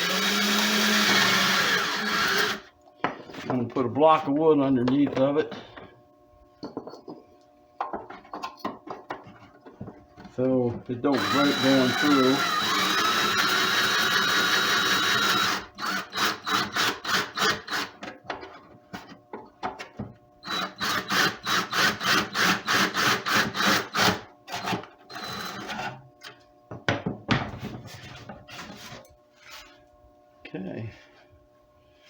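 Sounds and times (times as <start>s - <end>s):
electric drill boring wood: 0.0s - 2.7s, 11.1s - 18.0s, 20.4s - 25.8s.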